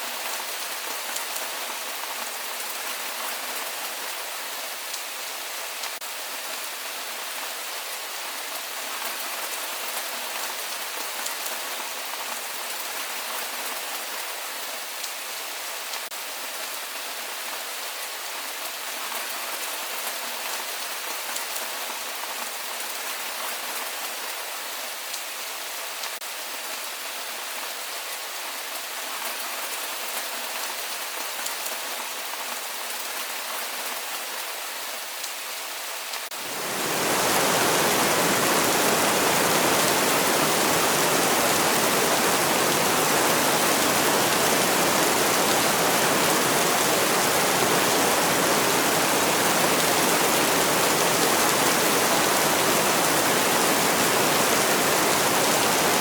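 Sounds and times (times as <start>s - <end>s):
heavy rain rushing: 36.3s - 56.0s
rain hissing: 36.3s - 56.0s.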